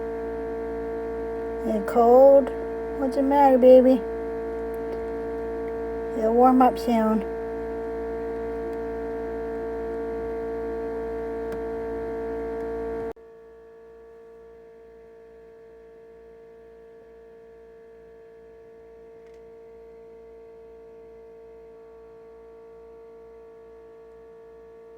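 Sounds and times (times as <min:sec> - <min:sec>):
electrical hum: 0:00.0 - 0:13.2.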